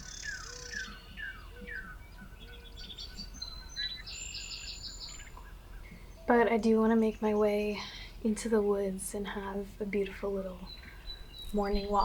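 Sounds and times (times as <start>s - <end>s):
high bird trill: 0.0s - 7.6s
songbirds singing: 0.0s - 12.0s.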